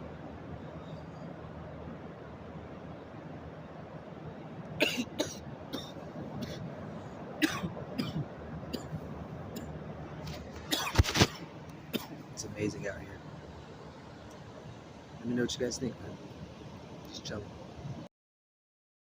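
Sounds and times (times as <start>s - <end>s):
low background rumble: 0.0s - 18.1s
person coughing: 4.8s - 6.6s, 7.4s - 8.9s.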